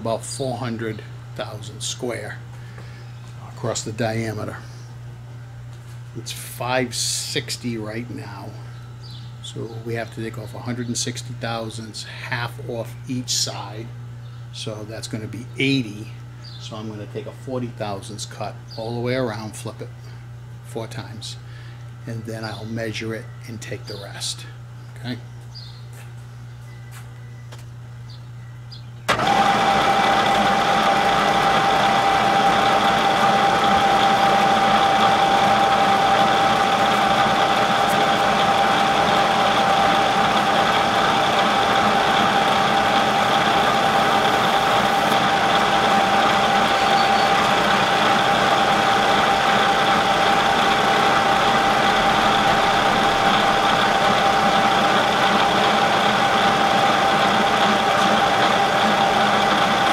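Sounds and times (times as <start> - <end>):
constant machine whine: 0.0 - 59.9
milling machine cutting steel: 29.1 - 59.9.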